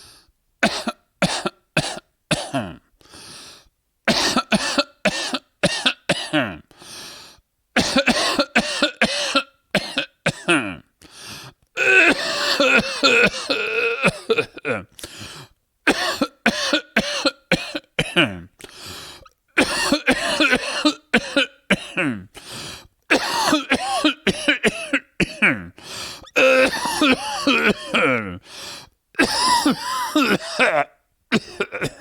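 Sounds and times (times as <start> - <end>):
quiet breaths: 0.0 - 0.4, 2.9 - 3.8, 6.7 - 7.5, 11.0 - 11.7, 14.9 - 15.6, 18.6 - 19.4, 22.3 - 23.0, 25.8 - 26.4, 28.4 - 29.0
man coughing: 0.6 - 2.9, 4.1 - 6.7, 7.8 - 10.9, 11.8 - 15.0, 15.9 - 18.5, 19.6 - 22.4, 23.1 - 28.5, 29.2 - 32.0.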